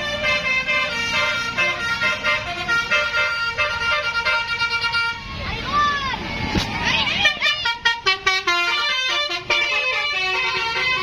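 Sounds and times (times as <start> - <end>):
bus musical horn playing a tune: 0.0 - 5.4, 7.1 - 11.0
bus engine running: 0.0 - 11.0.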